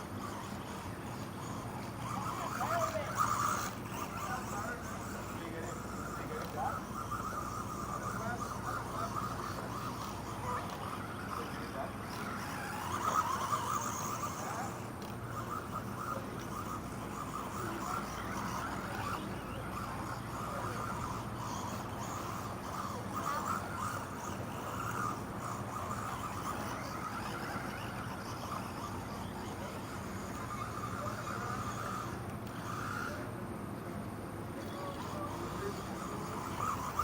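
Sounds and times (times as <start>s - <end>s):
electric toy truck motor whining: 0.0s - 33.4s, 34.2s - 37.0s.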